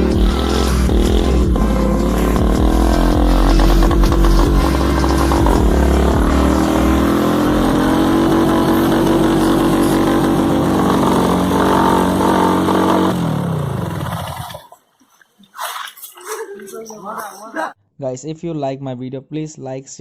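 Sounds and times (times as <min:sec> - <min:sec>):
motorcycle engine revving: 0:00.0 - 0:14.7.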